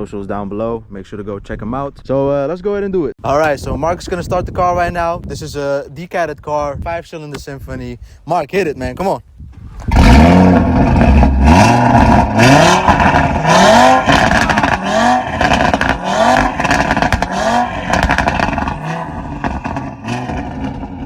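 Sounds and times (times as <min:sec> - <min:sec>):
exhaust crackles: 0:09.6 - 0:21.0
car engine revving: 0:09.9 - 0:21.0.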